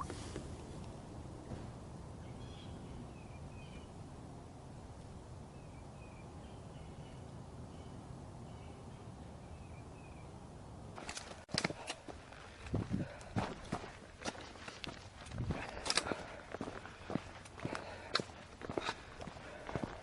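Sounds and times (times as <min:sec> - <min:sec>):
birds chirping softly: 0:00.0 - 0:20.0
low outdoor rumble: 0:00.0 - 0:20.0
footsteps: 0:11.0 - 0:20.0.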